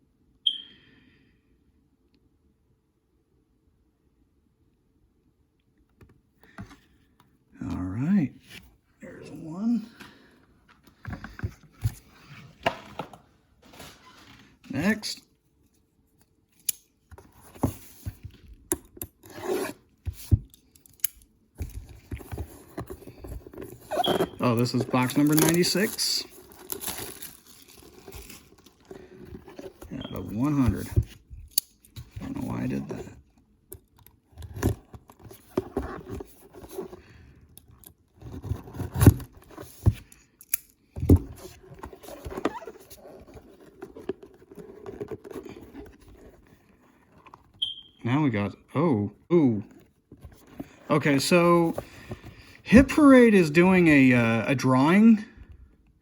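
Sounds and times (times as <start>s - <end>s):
hands handling trading cards: 20.1s - 33.1s
cardboard packaging rustling: 21.6s - 33.3s, 34.2s - 40.1s, 41.0s - 47.6s.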